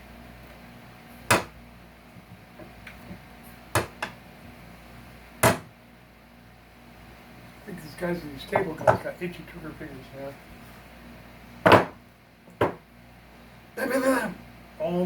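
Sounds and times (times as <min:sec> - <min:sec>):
hand tools knocking on wood: 0:03.8 - 0:04.2, 0:05.4 - 0:05.7, 0:08.5 - 0:09.0, 0:11.6 - 0:12.0, 0:12.6 - 0:12.8.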